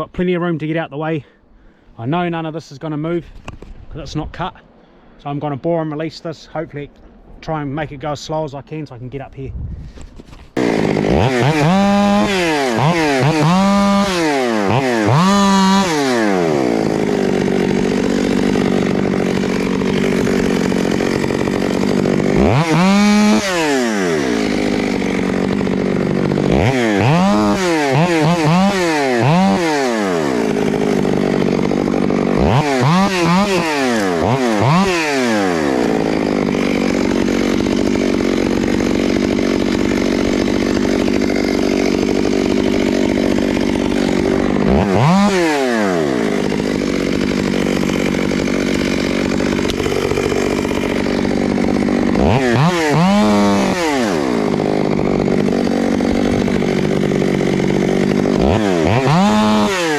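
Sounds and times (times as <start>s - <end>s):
chainsaw cutting at full throttle: 9.8s - 59.9s
chainsaw quick revs: 9.9s - 59.9s.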